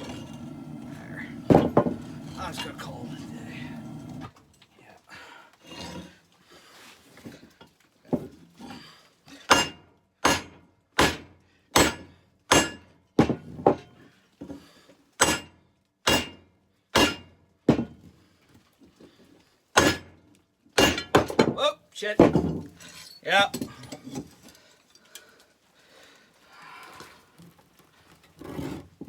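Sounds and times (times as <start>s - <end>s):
hammer striking steel on anvil: 11.8s - 12.8s, 16.1s - 16.4s, 17.0s - 17.2s.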